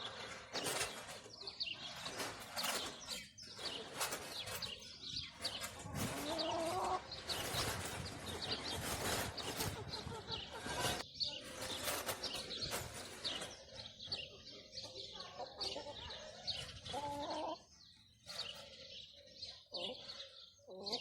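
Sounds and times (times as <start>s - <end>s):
rustling noise: 0.0s - 14.3s
small birds chirping: 0.0s - 21.0s.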